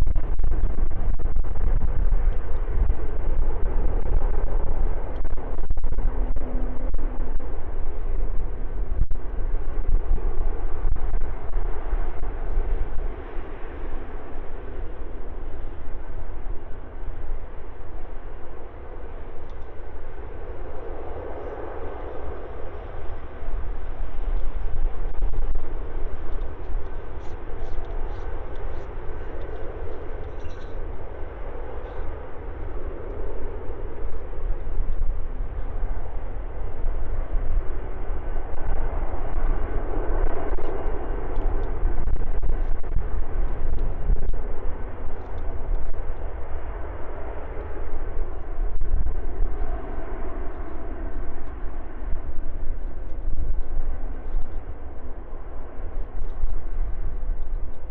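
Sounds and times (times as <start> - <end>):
jet engines roaring: 0.0 - 57.9
wind buffeting microphone: 0.0 - 57.9.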